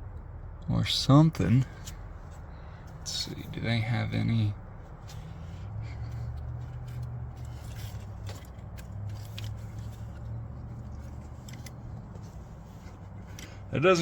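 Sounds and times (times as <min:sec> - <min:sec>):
light clicks and scrapes: 0:04.9 - 0:13.7.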